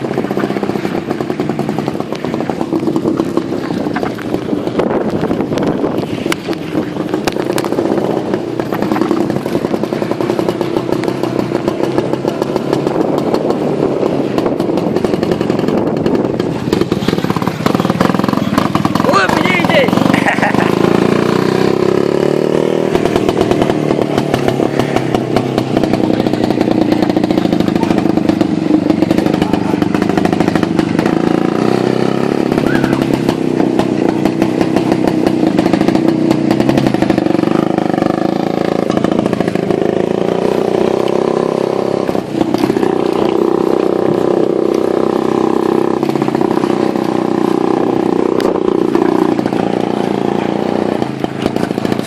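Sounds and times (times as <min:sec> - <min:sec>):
two-stroke motorcycle engine running: 0:00.0 - 0:52.0.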